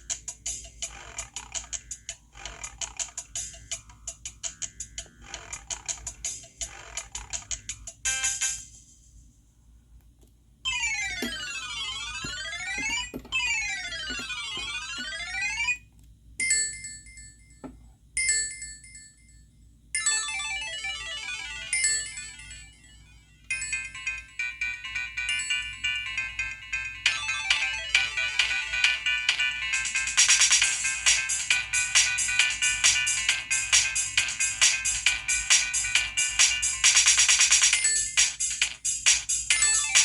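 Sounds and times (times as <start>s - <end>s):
electronic phone ringtones: 10.7s - 15.8s, 20.0s - 38.6s, 39.5s - 40.0s.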